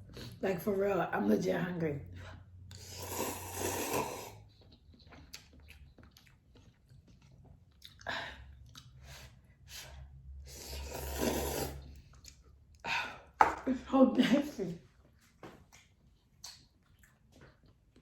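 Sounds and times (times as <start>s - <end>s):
person slurping noodles: 2.7s - 4.5s, 10.4s - 12.0s
chewing with mouth clicks: 4.4s - 9.5s, 11.9s - 12.8s, 15.6s - 18.0s.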